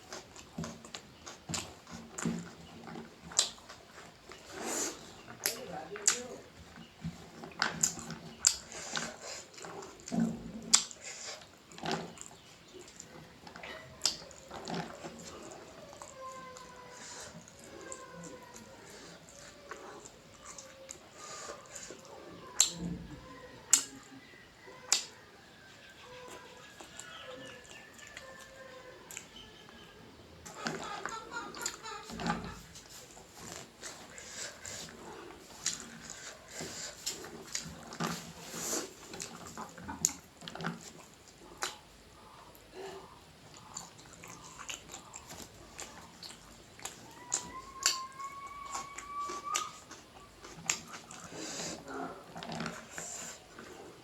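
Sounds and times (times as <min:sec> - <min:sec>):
chewing with wet lip smacks: 0:00.0 - 0:04.6, 0:05.2 - 0:06.4, 0:07.4 - 0:22.8, 0:32.8 - 0:54.0
sharp eating clicks: 0:00.0 - 0:22.9, 0:24.8 - 0:25.2, 0:30.4 - 0:54.0
faint chirping calls: 0:11.0 - 0:37.5, 0:41.4 - 0:54.0.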